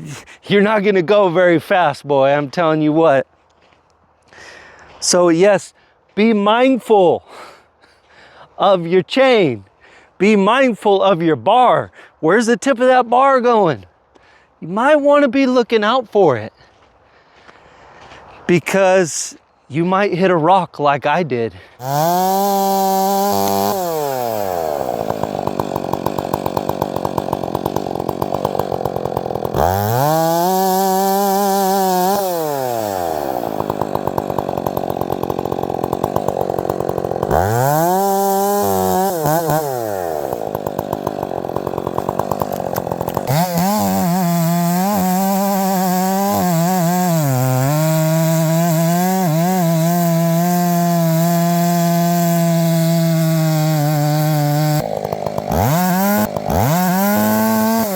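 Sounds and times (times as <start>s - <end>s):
chainsaw engine revving: 21.8s - 57.9s.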